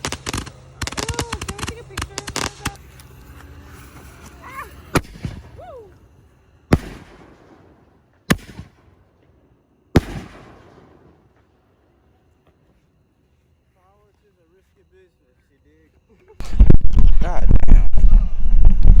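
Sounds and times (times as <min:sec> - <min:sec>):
fireworks crackle: 0:00.0 - 0:09.1, 0:16.4 - 0:19.0
fireworks bangs: 0:00.0 - 0:11.7.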